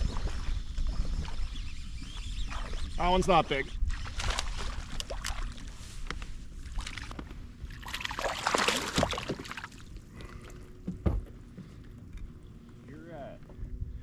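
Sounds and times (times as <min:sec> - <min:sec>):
water sloshing around kayak: 0:03.9 - 0:12.6.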